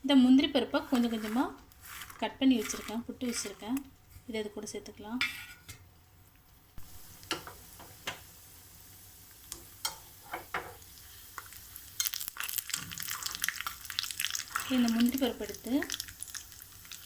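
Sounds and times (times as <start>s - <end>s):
nuts sizzling in hot fat: 0.2s - 5.2s, 6.7s - 17.0s
spoon scraping a pan: 0.6s - 3.8s, 5.2s - 5.8s, 9.6s - 12.2s.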